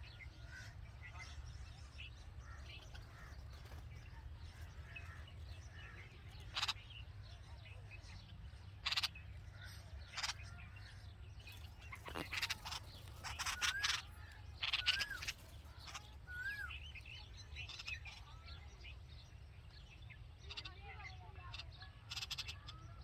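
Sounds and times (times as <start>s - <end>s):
harsh raspy bird calls: 8.8s - 9.1s, 11.7s - 17.0s.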